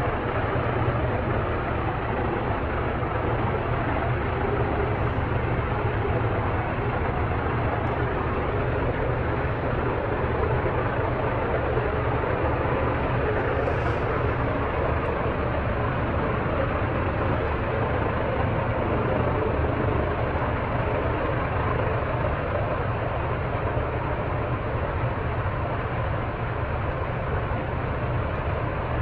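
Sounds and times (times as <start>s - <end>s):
low hum: 0.0s - 29.0s
power plant roar: 0.0s - 29.0s.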